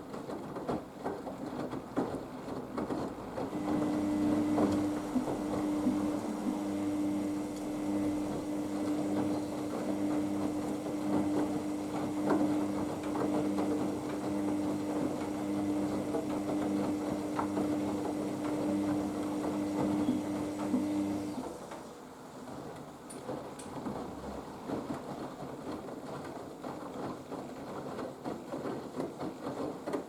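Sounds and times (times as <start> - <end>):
washing machine motor humming: 2.8 - 22.0.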